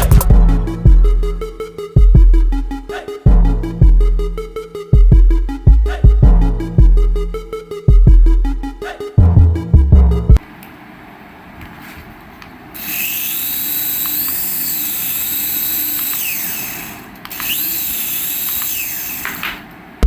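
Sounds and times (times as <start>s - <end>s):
toy electric motor whining: 12.8s - 19.6s.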